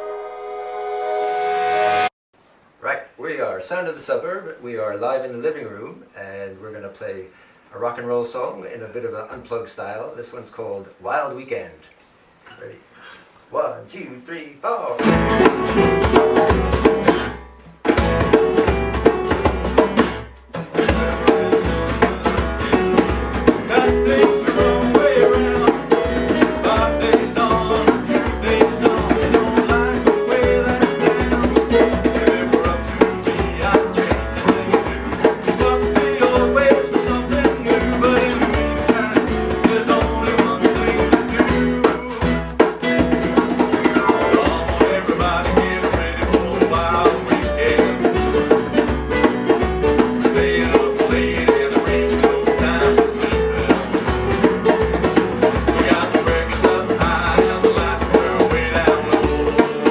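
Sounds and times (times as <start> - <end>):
acoustic rock and roll band: 14.8 - 59.9.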